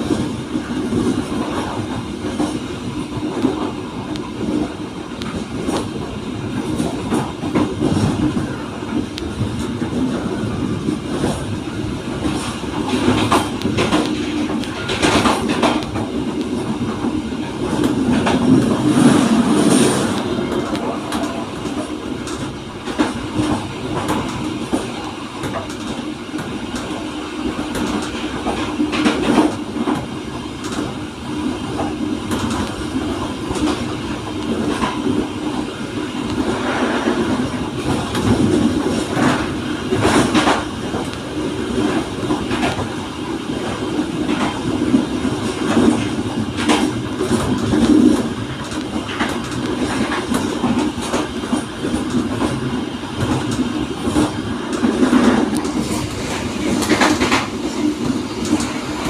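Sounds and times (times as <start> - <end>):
train rumbling on track: 0.0 - 59.0
wheels clicking over rail joints: 4.4 - 27.0.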